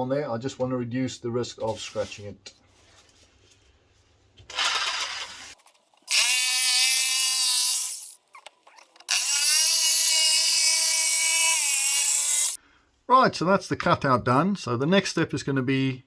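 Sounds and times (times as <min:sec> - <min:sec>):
jigsaw cutting plastic sheet: 0:04.5 - 0:12.6.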